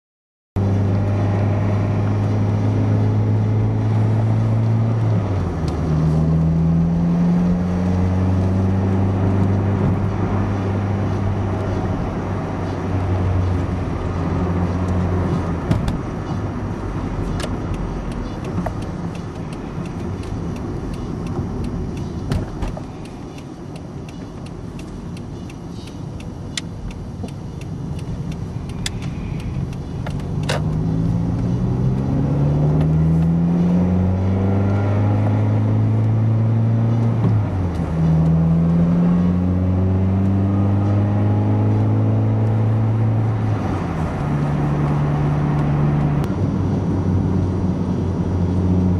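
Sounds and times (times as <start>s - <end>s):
car engine running: 7.5s - 34.4s
sharp clicks: 17.3s - 30.8s.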